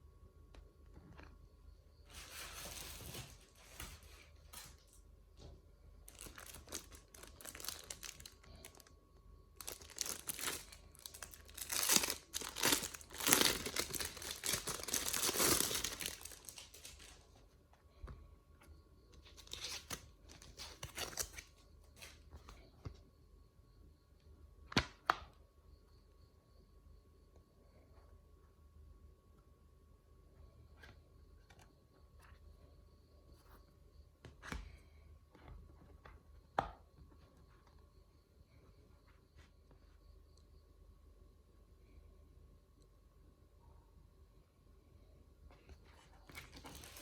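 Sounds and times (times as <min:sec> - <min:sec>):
packaging crinkling and tearing: 0:06.1 - 0:08.9, 0:09.6 - 0:17.2, 0:19.3 - 0:22.1, 0:46.3 - 0:47.0.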